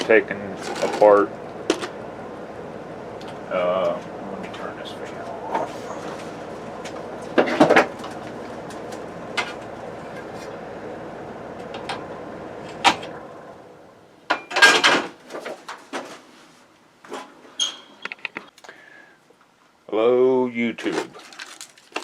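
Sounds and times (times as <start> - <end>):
electric fan whirring: 0.0 - 16.1.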